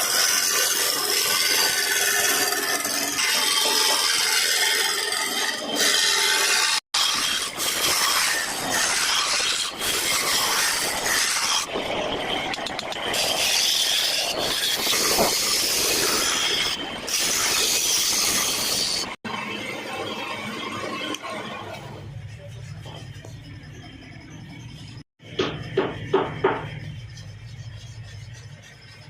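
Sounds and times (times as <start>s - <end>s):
chisel scraping wood on lathe: 0.0s - 17.8s, 26.1s - 29.0s.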